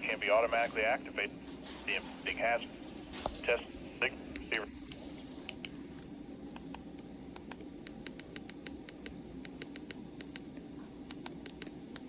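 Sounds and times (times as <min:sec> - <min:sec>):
radio static clicks: 0:00.0 - 0:05.8
faint low hum: 0:00.0 - 0:12.0.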